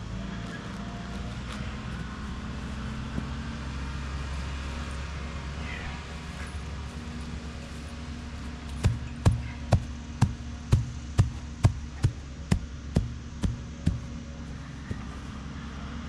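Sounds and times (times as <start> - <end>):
low engine rumble: 0.0 - 16.0
dull thuds: 8.7 - 15.4.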